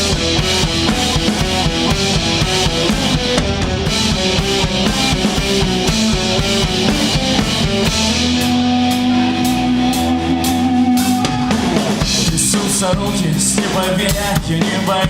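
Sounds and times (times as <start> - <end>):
rock band playing live: 0.0 - 15.0.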